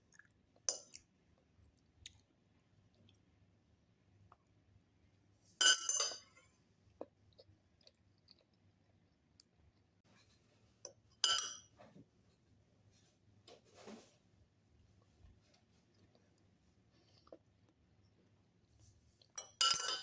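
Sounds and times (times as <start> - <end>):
tableware clinking: 5.6 - 6.5, 11.2 - 11.7, 19.4 - 20.0.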